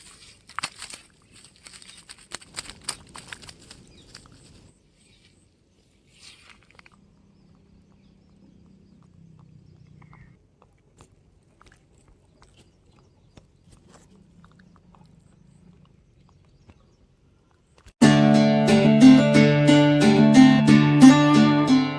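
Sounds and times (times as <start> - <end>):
strummed acoustic guitar music: 18.0 - 21.9.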